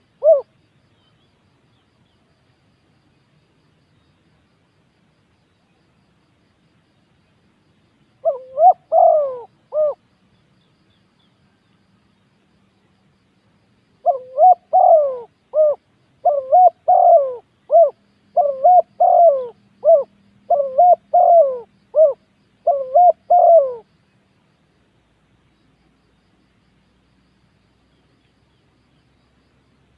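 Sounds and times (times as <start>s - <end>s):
dove cooing: 0.0s - 0.5s, 8.2s - 10.0s, 14.0s - 23.9s.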